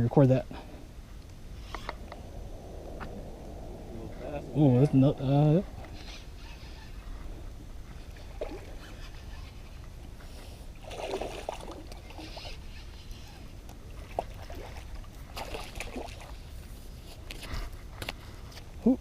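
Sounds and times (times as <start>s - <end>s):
wind rumble on microphone: 0.0s - 19.0s
water sloshing and splashing: 10.8s - 13.0s, 13.8s - 16.8s.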